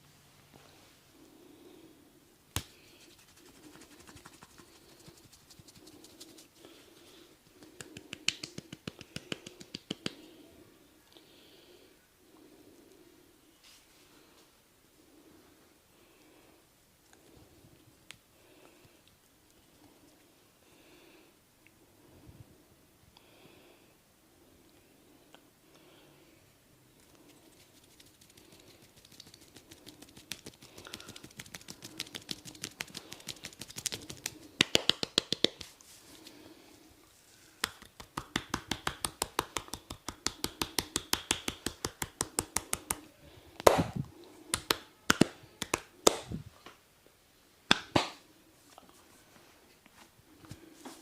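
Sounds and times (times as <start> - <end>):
hand taps and slaps on head: 2.5 - 2.8, 7.6 - 10.2, 30.2 - 35.7, 37.6 - 43.0, 43.6 - 46.3, 47.7 - 48.2.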